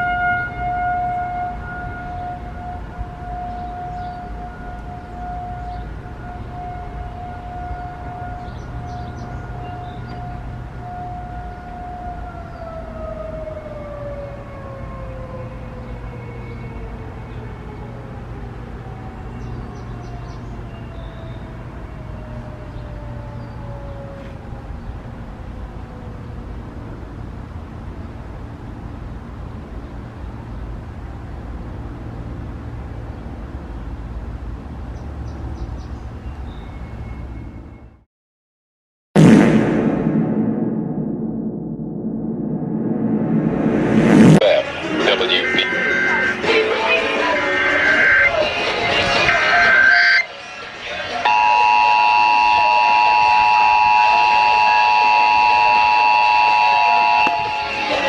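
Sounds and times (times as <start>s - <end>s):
loud two-tone alert signal: 44.4s - 50.3s, 51.3s - 58.0s.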